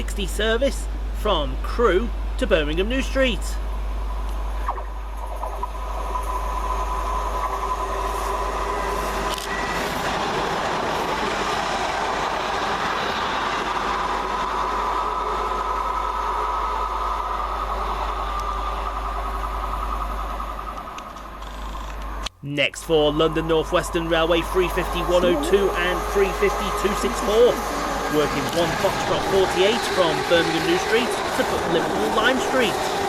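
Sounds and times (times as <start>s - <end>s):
high whine: 0.0s - 33.0s
train wheels rushing on rail: 5.8s - 21.7s, 22.3s - 33.0s.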